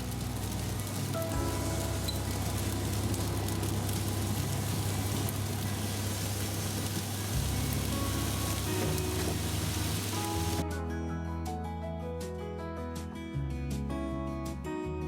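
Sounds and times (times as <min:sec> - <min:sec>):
continuous low hum: 0:00.0 - 0:10.6
rice sizzling in oiled pan: 0:00.0 - 0:10.6.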